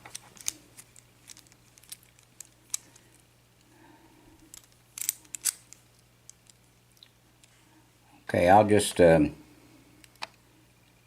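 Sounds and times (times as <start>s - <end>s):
padlock and lock picks clicking: 4.5s - 6.6s.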